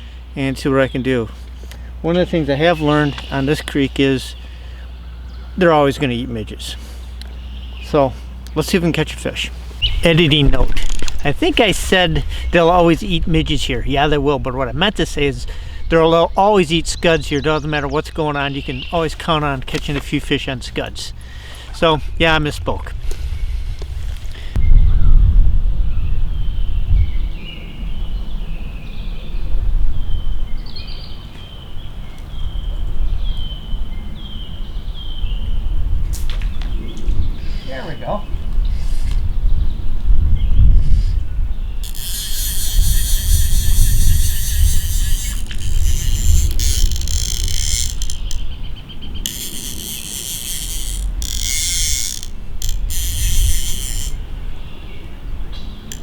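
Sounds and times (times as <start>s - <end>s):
steady low rumble: 9.4s - 27.2s
songbird whistling: 9.8s - 10.1s
fishing reel drag ratcheting: 10.0s - 14.1s, 19.0s - 21.8s, 41.8s - 54.3s.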